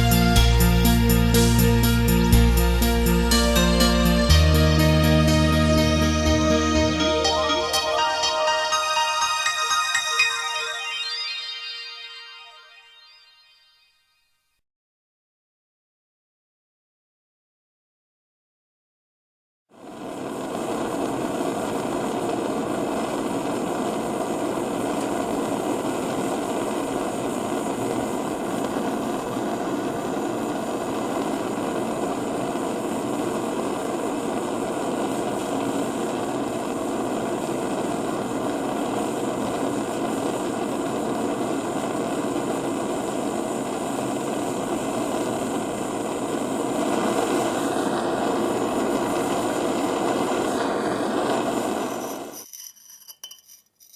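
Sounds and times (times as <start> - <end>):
steady rushing noise: 19.8 - 52.0.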